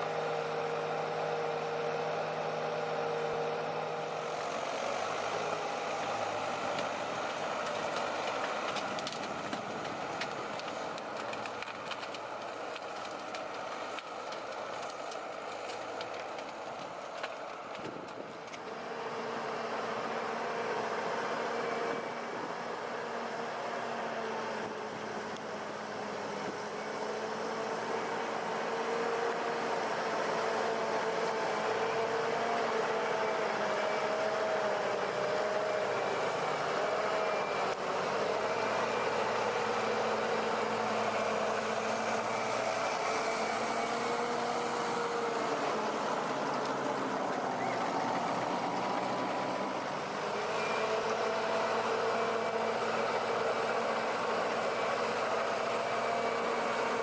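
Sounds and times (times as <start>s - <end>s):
heavy vehicle engine running: 0.0s - 57.0s.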